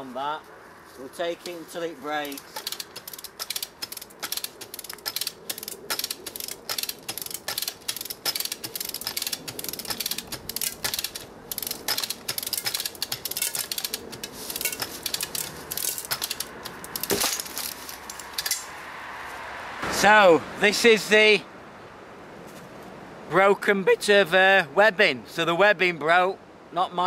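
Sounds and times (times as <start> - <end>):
ratchet hoist pawl clicking: 2.2 - 17.1
webbing snapping crack: 2.2 - 18.8.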